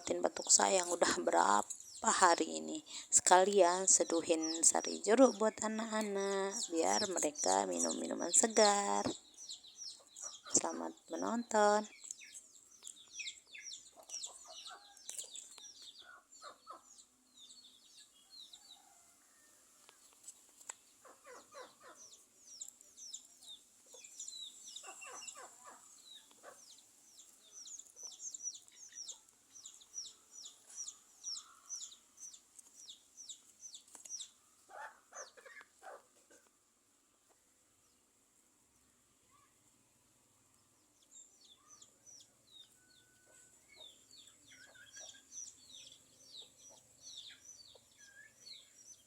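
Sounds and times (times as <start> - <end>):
small birds chirping: 0.0 - 19.1, 19.8 - 36.6, 37.2 - 49.0
chickens clucking: 13.2 - 16.9.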